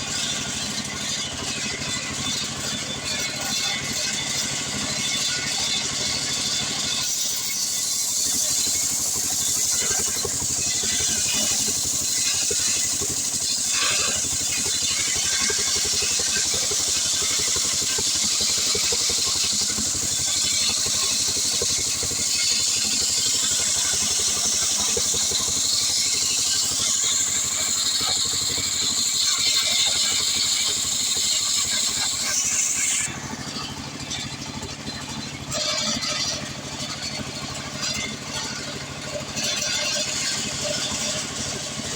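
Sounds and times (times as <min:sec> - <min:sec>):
chainsaw sawing through wood: 0:01.0 - 0:33.2.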